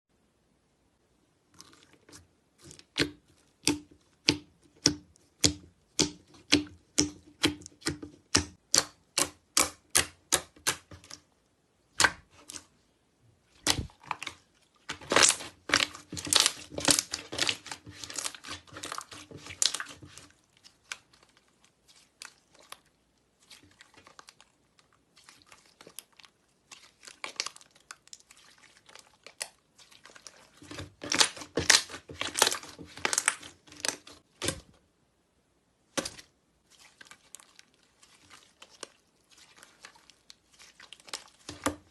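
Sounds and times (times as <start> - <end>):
slime crunching crackle: 13.6 - 34.3, 36.7 - 41.9.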